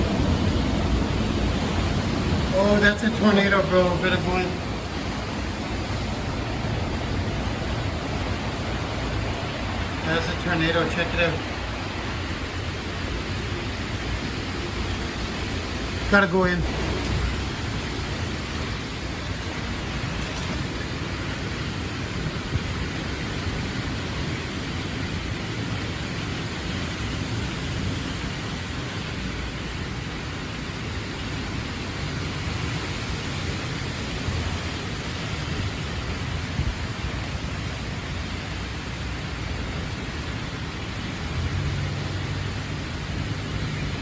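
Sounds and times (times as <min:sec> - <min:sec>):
wind buffeting microphone: 0:00.0 - 0:28.7
rain: 0:00.0 - 0:44.0
wind rushing: 0:11.1 - 0:22.9.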